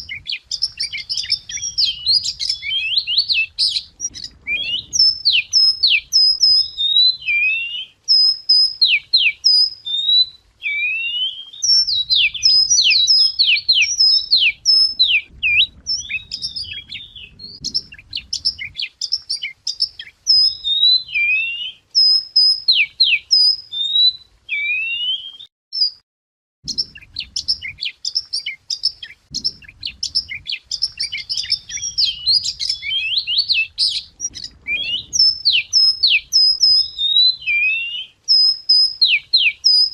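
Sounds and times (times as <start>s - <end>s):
wagtail singing: 0.0s - 26.0s, 26.6s - 39.9s.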